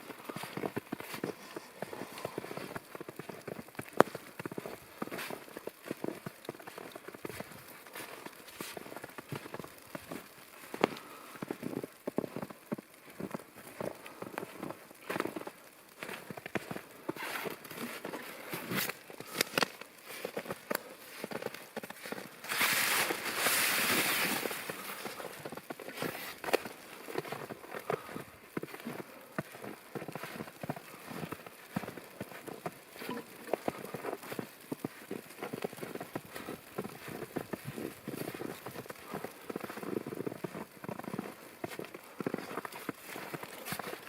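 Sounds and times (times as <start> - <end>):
crackle of falling snow: 0.0 - 44.0
footsteps in wet snow: 0.0 - 44.0
brushing rustle: 22.4 - 25.3.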